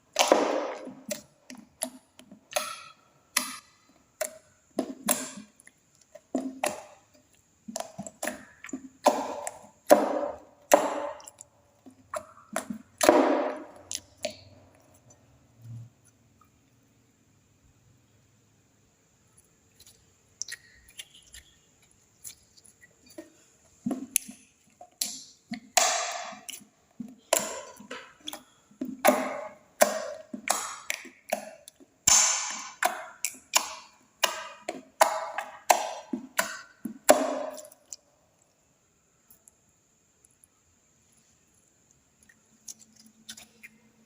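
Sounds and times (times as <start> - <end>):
slime wet pops and squelches: 0.1 - 5.8, 23.9 - 38.0.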